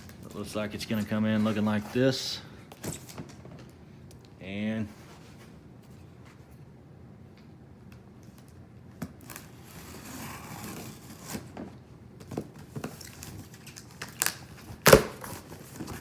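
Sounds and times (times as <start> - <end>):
cardboard packaging tearing: 9.1 - 11.6, 12.7 - 16.0.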